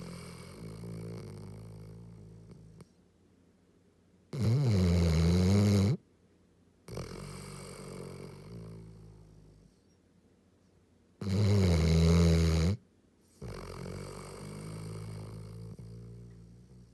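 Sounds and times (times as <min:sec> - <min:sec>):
dog snoring: 0:00.0 - 0:03.0, 0:04.3 - 0:06.0, 0:06.9 - 0:09.8, 0:11.2 - 0:12.8, 0:13.4 - 0:16.9.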